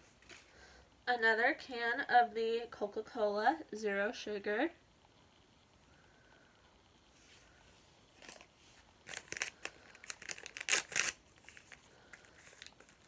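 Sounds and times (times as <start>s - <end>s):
plastic wrapping crinkling and tearing: 8.2s - 13.0s.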